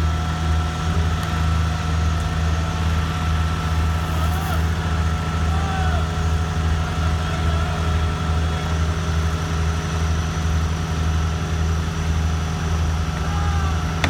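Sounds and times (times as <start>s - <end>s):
engine deep drone: 0.0s - 14.0s.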